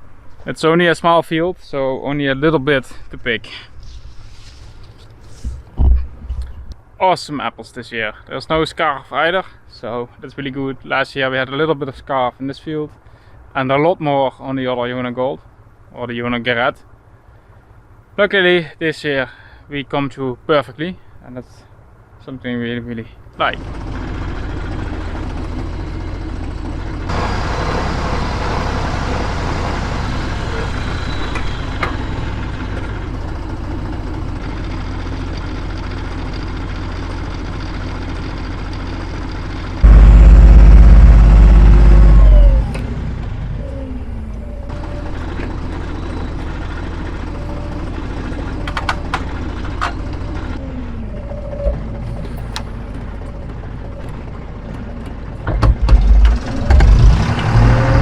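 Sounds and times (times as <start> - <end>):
farm machinery engine running: 23.6 - 58.0
loud low rumble: 39.8 - 44.8.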